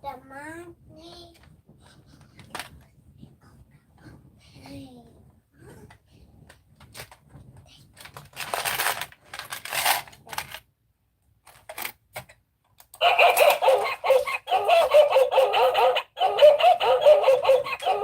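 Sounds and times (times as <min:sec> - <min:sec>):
small hard objects rattling: 0:08.2 - 0:10.6.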